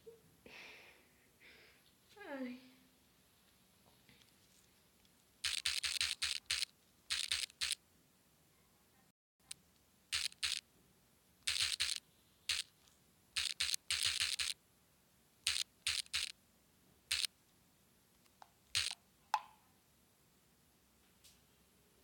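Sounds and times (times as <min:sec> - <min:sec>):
sharp click: 0:05.4 - 0:07.8, 0:10.2 - 0:10.6, 0:11.5 - 0:12.7, 0:13.4 - 0:14.6, 0:15.5 - 0:16.3, 0:18.7 - 0:19.5
scratchy rubs and taps: 0:11.5 - 0:12.7, 0:13.4 - 0:14.6, 0:15.5 - 0:16.3, 0:18.3 - 0:19.0.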